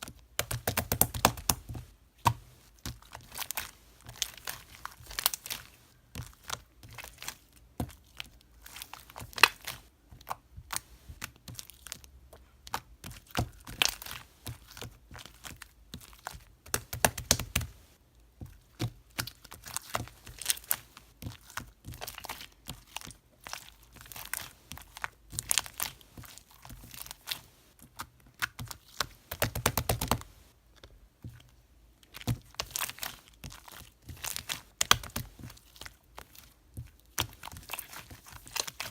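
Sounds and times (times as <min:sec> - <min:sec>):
crinkling and tearing: 0:32.2 - 0:38.9.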